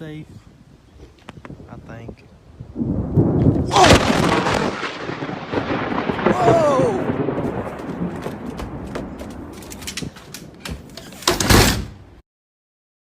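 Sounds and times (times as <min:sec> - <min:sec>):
thunder rumbling: 0:02.4 - 0:11.0
sharp crackles: 0:03.0 - 0:11.4.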